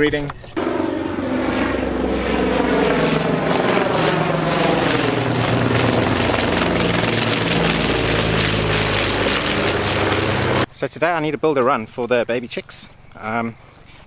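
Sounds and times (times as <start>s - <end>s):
propeller plane flying overhead: 0.4s - 10.7s.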